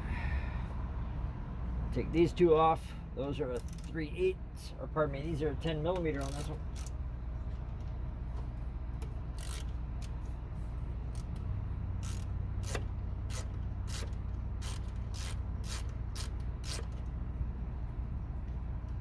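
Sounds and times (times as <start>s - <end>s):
ratchet wrench clicking: 3.6s - 4.0s, 6.1s - 7.0s, 9.0s - 10.2s, 11.1s - 17.1s.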